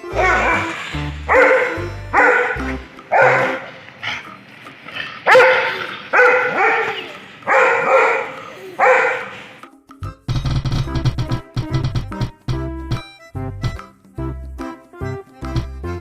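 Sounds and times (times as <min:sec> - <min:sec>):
children's music: 0:00.0 - 0:16.0
dog barking: 0:00.1 - 0:04.3, 0:05.2 - 0:09.6.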